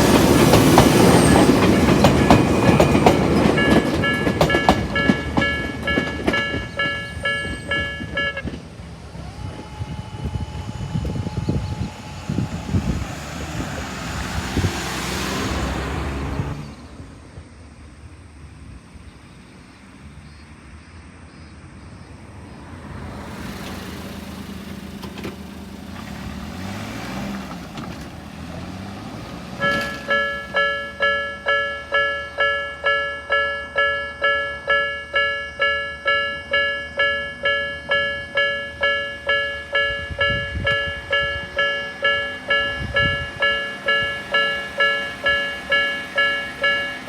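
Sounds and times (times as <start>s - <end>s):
crossing warning bell dinging: 0.0s - 12.8s, 29.5s - 47.0s
road vehicle passing: 0.0s - 47.0s
train passing: 0.0s - 47.0s.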